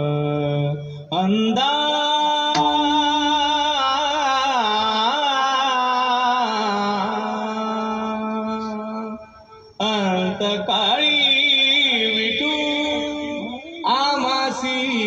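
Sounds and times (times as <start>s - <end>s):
person singing long wavering note: 2.5s - 14.0s.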